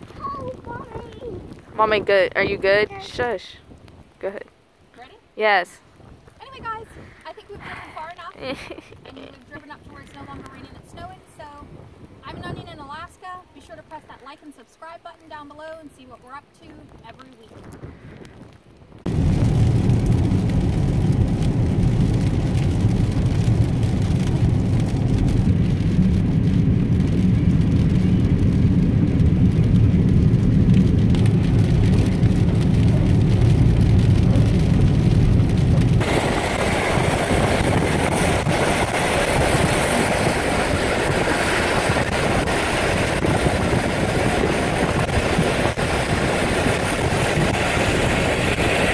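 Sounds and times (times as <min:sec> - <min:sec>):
tyre and wind hiss: 0:00.0 - 0:48.9
car engine and road drone: 0:19.0 - 0:48.9.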